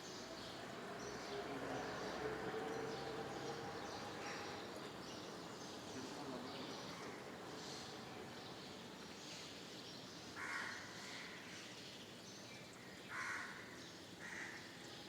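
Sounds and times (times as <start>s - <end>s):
crows cawing: 10.4s - 11.3s, 13.1s - 14.6s.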